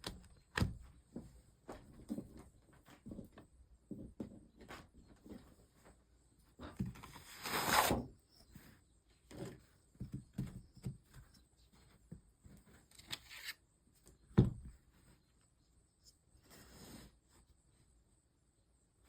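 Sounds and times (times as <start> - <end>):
rustling scrape: 7.0 - 8.6, 16.3 - 17.5.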